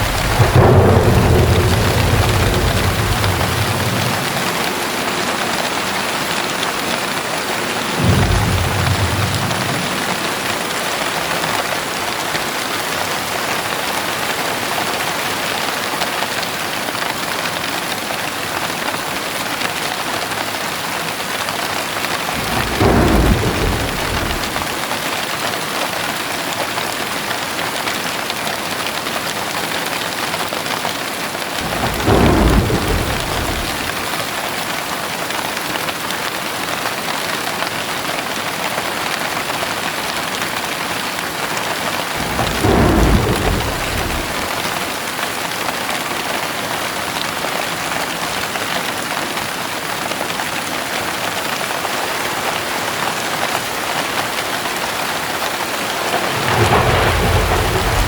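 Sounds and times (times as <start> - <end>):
thunder rumbling: 0.0 - 12.0, 22.2 - 25.1, 31.6 - 34.7, 41.7 - 45.1, 55.9 - 58.0
heavy rain: 0.0 - 58.0.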